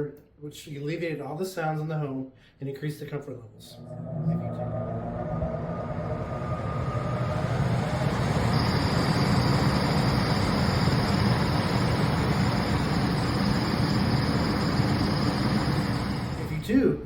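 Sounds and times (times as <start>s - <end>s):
high whine: 3.4s - 17.0s
blower motor rattling: 3.6s - 17.0s.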